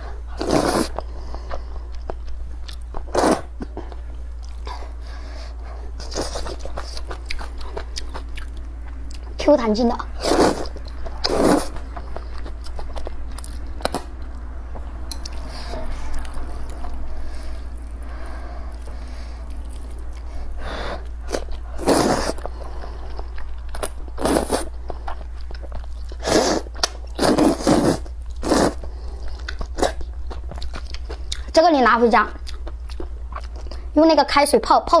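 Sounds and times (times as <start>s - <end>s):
chewing noodles: 6.0s - 9.4s, 10.1s - 20.4s, 21.0s - 31.6s.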